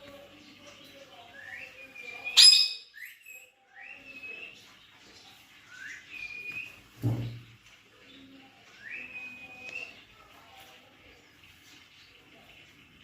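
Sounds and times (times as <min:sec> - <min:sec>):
parrots whistling: 0:01.5 - 0:04.4.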